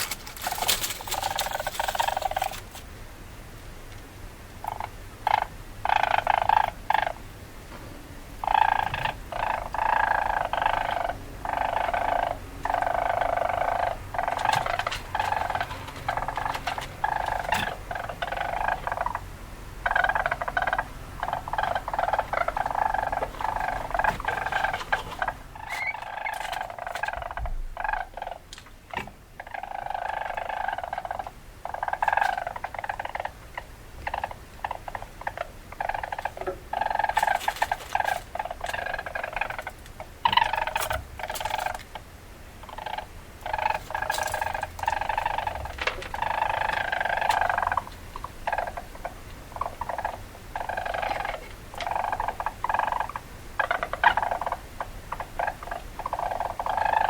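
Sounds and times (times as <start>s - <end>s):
weasel calls: 0.0s - 2.7s, 4.6s - 7.2s, 8.4s - 57.0s.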